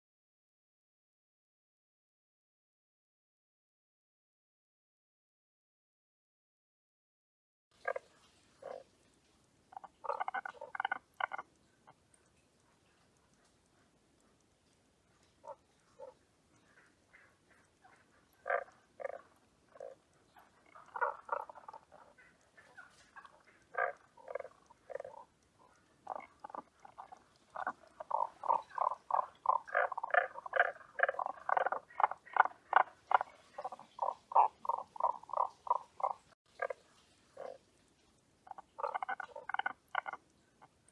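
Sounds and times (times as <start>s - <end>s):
frog croaking: 7.8s - 9.0s, 9.7s - 37.6s, 38.4s - 40.9s.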